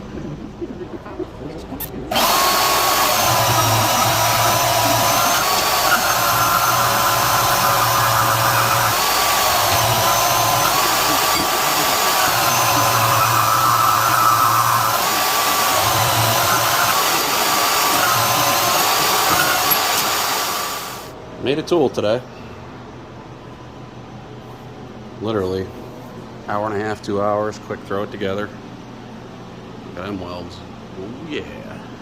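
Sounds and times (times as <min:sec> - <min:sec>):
bandsaw motor whine: 0:02.1 - 0:21.1.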